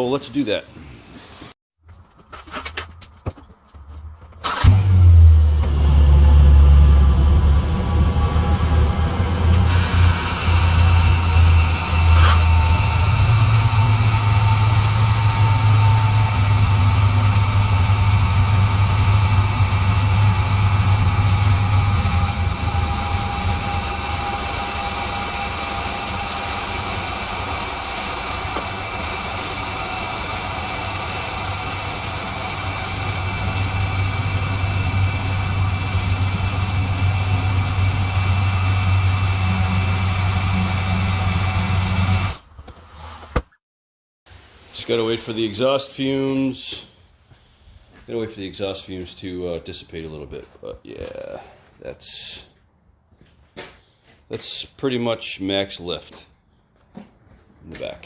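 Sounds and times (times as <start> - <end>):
engine idling: 4.5 - 42.4
air compressor hum: 4.6 - 42.4.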